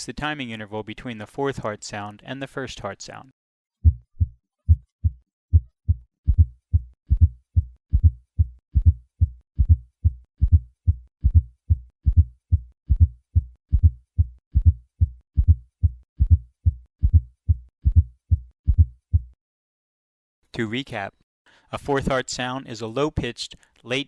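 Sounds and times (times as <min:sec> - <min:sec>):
heartbeat with extra low beat: 0:03.8 - 0:19.4.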